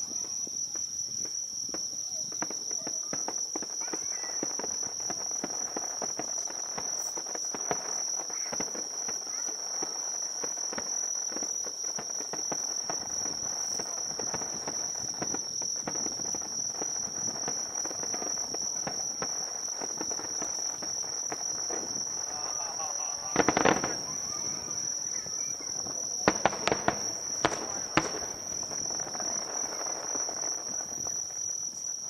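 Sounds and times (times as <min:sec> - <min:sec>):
fireworks popping and crackling: 0:00.0 - 0:32.0
insects trilling: 0:00.0 - 0:32.0.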